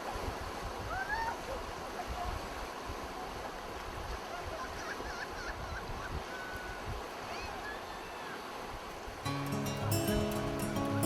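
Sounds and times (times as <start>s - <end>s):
river water flowing: 0.0s - 11.0s.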